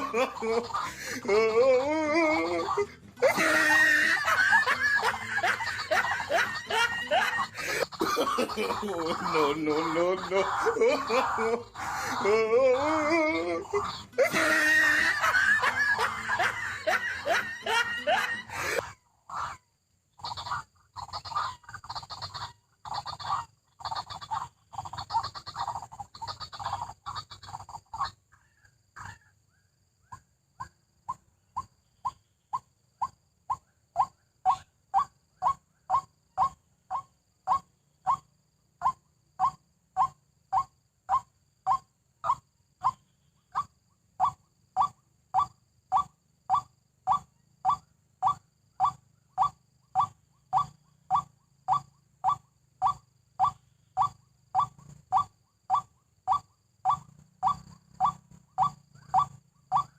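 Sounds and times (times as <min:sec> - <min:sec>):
waterhen calling: 0:00.0 - 0:19.6, 0:20.2 - 0:28.1.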